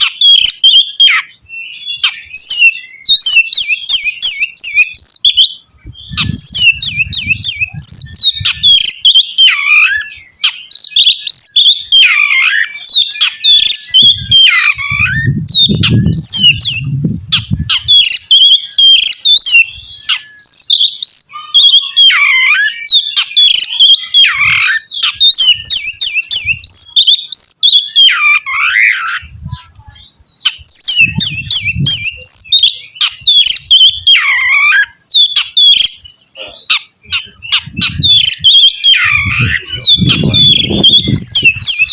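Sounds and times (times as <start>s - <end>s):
songbird singing varied phrases: 0.0s - 41.9s.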